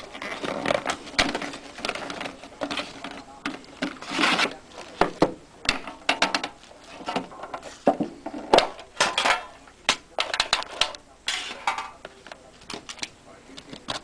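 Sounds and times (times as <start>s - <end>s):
cardboard scraping and tearing: 0.0s - 3.0s, 3.8s - 4.9s
knife cutting cardboard box: 3.9s - 4.6s.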